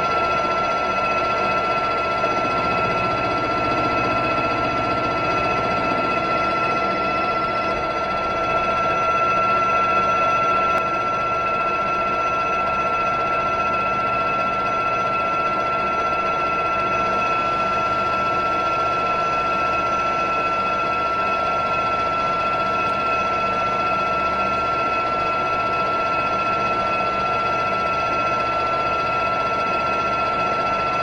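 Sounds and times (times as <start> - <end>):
metal lathe whining: 0.0 - 10.8.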